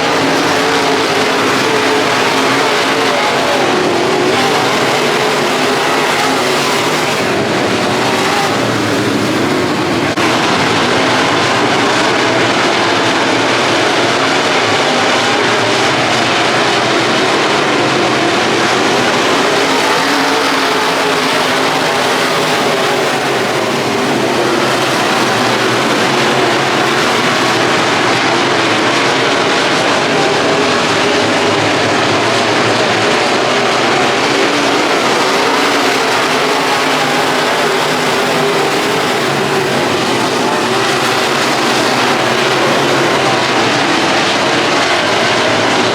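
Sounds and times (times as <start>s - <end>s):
race car engines running: 0.0s - 45.9s.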